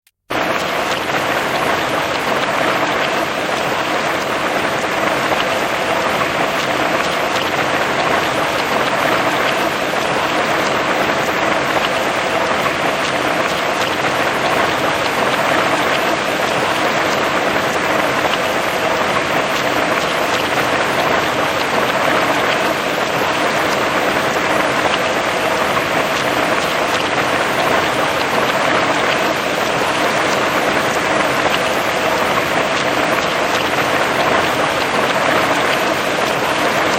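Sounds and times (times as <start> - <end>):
heavy rain on grass and trees: 0.3 - 36.9.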